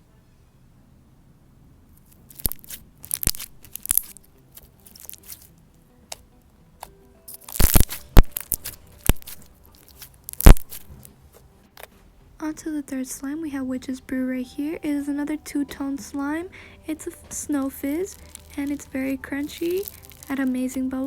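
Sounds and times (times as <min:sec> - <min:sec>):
slime crackling and popping: 0:02.0 - 0:05.5, 0:06.1 - 0:11.1, 0:17.1 - 0:21.0.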